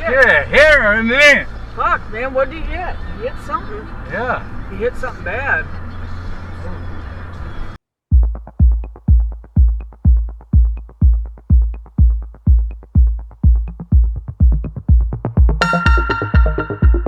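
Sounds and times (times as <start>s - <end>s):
kick-drum beat: 8.1s - 17.0s
hi-hat ticks: 8.2s - 17.0s
synth chords: 8.2s - 17.0s.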